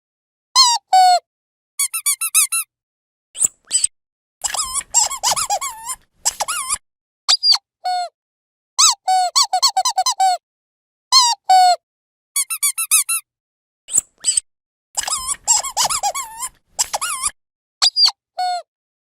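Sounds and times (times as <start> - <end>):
rubber dog toy squeaking: 1.8 - 2.7, 3.4 - 8.0, 8.8 - 10.4, 12.4 - 13.2, 13.9 - 14.4, 15.0 - 18.6.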